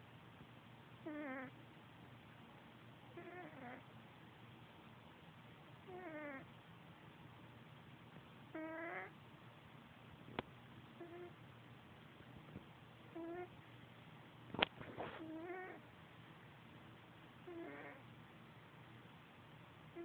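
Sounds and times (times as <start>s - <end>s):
cat snoring: 1.0s - 1.6s, 3.1s - 3.9s, 5.8s - 6.5s, 8.5s - 9.2s, 11.0s - 11.4s, 13.1s - 13.5s, 15.1s - 15.8s, 17.4s - 18.0s.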